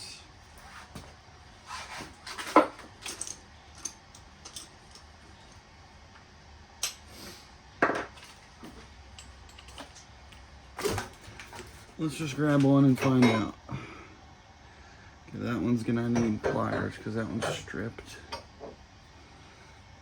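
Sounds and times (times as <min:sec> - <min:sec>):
wrenches clinking against metal: 0:02.2 - 0:05.6, 0:09.1 - 0:11.2, 0:12.6 - 0:13.5.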